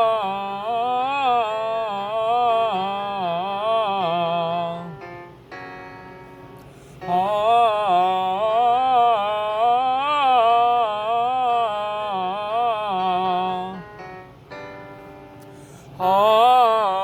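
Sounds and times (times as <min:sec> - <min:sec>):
person singing sustained vowel: 0:00.0 - 0:05.0, 0:07.0 - 0:14.0, 0:15.9 - 0:17.0.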